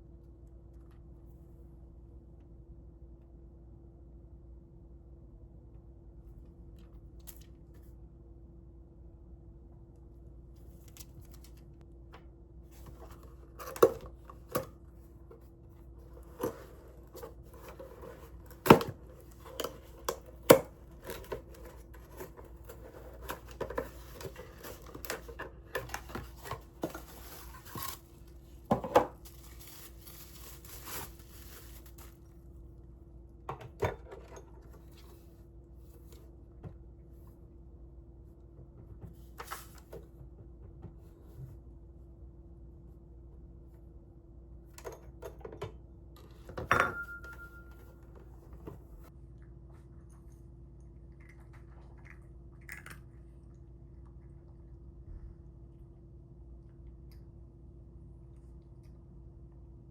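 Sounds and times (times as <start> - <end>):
faint steady hum: 0.0 - 59.9
rustling: 21.0 - 32.4.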